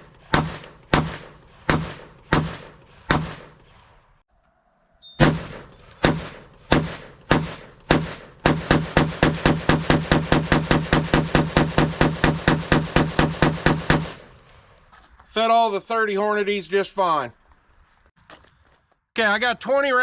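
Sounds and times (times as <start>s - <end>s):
rifle shots: 0.0s - 4.2s, 5.2s - 14.8s.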